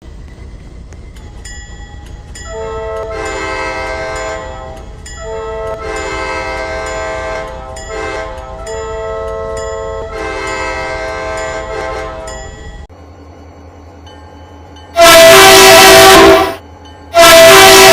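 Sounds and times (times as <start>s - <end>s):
train air horn blasts: 2.5s - 12.4s, 15.0s - 17.9s.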